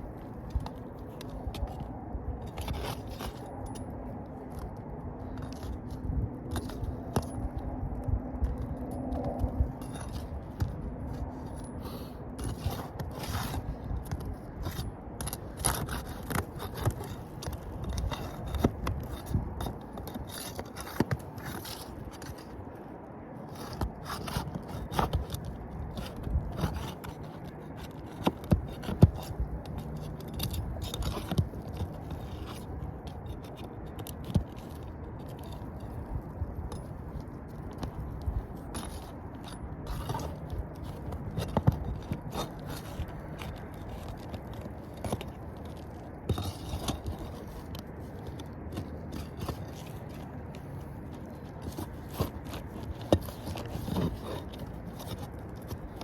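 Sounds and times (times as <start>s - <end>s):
roof shingles scraping: 37.8s - 56.0s.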